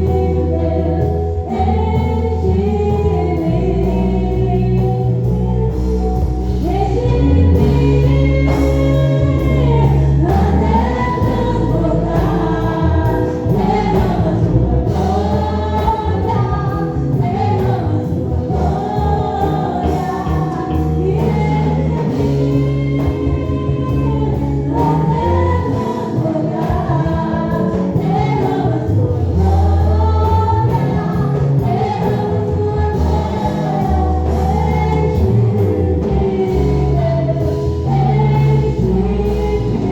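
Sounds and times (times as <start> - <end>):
band accompaniment: 0.0 - 39.9
voices singing together: 0.0 - 39.9.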